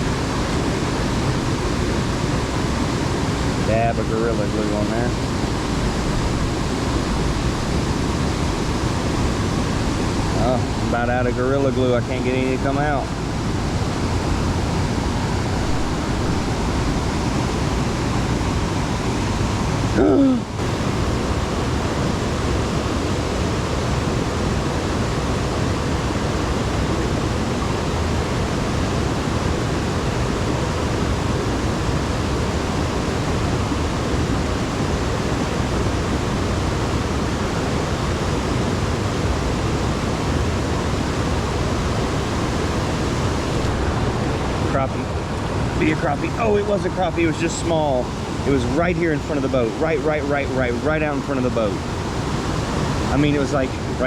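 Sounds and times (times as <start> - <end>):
water rushing below a dam: 0.0 - 54.0.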